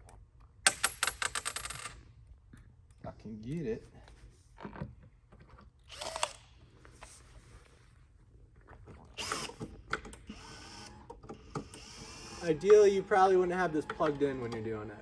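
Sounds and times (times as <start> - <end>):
cordless drill driving screws: 5.9 - 6.5, 9.2 - 15.0.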